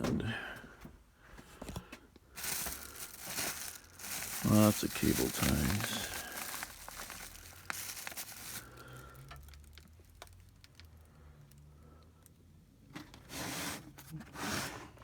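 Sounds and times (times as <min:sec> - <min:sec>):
packaging rustling and crinkling: 0:02.4 - 0:11.1.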